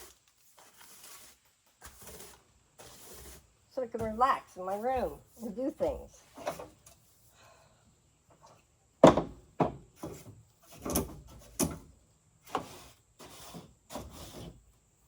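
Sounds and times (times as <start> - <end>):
wooden knocks and clunks: 8.4 - 11.9.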